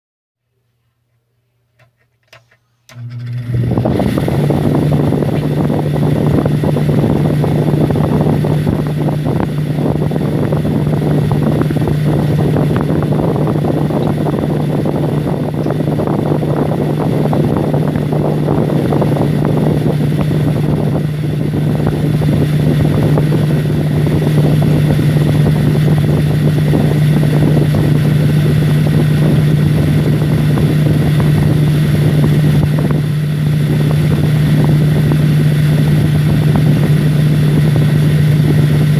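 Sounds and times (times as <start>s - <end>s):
humidifier humming and rushing: 0.6s - 38.9s.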